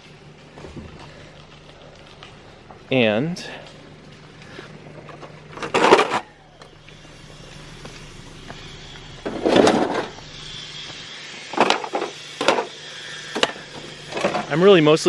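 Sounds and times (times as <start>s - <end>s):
metal pieces scraping and clattering: 5.1s - 6.3s, 9.2s - 10.2s, 11.5s - 14.5s.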